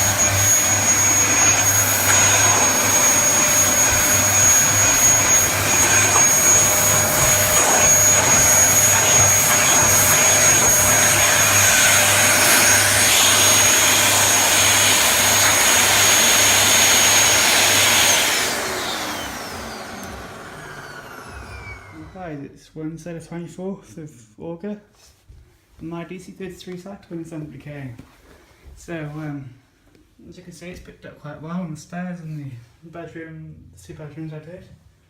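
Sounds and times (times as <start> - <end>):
vacuum cleaner motor whine: 0.0 - 22.4.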